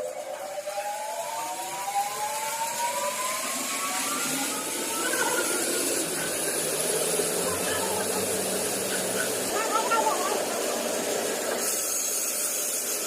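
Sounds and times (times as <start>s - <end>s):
band saw whine: 0.0s - 12.9s
steady hiss: 2.9s - 13.0s.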